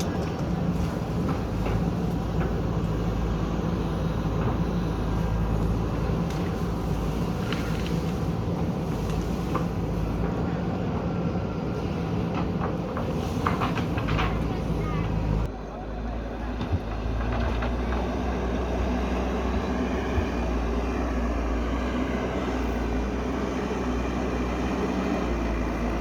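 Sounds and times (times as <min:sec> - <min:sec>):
diesel engine running: 0:00.0 - 0:26.0
faint clicks and scrapes: 0:06.1 - 0:10.3.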